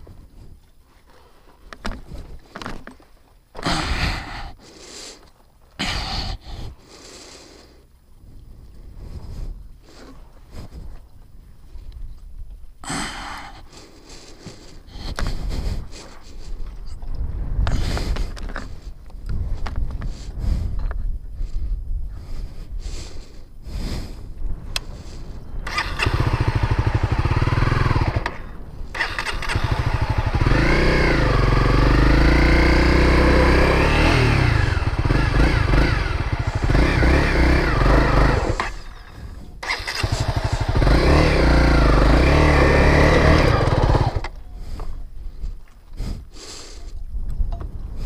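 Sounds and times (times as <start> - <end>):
motorcycle engine revving: 25.6 - 44.4.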